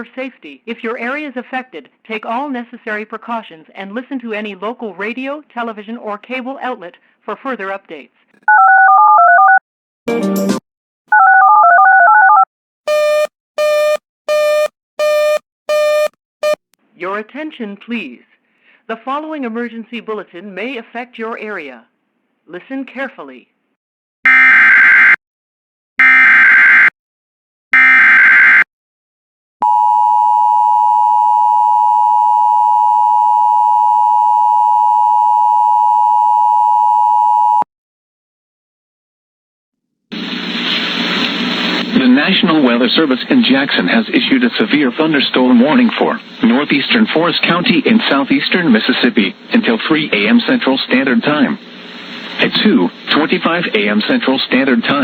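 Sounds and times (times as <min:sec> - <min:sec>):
busy signal beeps: 0:11.2 - 0:16.6, 0:29.6 - 0:37.7
digital data bursts: 0:41.7 - 0:55.0.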